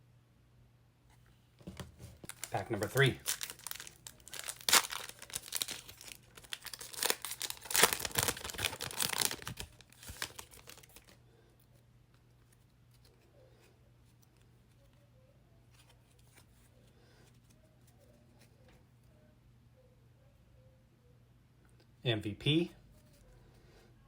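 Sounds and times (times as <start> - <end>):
wrapper tearing and crinkling: 2.2 - 11.2.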